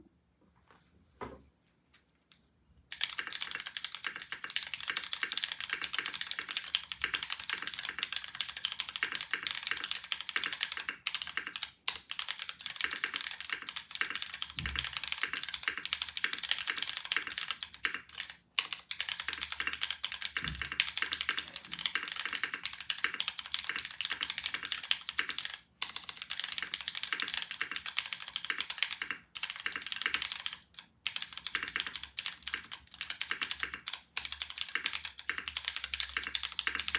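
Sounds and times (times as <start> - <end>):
fast typing on mechanical keyboard: 2.9 - 36.9.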